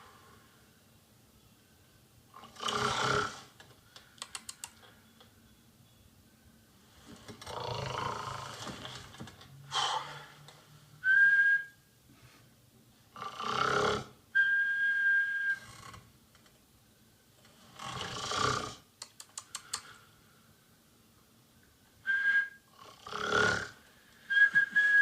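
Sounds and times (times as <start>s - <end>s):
woman snoring: 2.4s - 3.5s, 13.2s - 14.1s, 17.6s - 18.8s, 22.8s - 23.8s
small clicks: 3.6s - 5.4s, 19.0s - 20.0s
high-pitched whistle: 11.0s - 11.8s, 14.4s - 15.6s, 24.3s - 25.0s.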